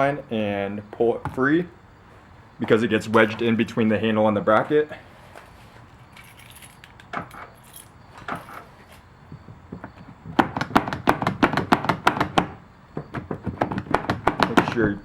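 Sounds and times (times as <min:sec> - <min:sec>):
door handle clicking and rattling: 0:06.2 - 0:08.7.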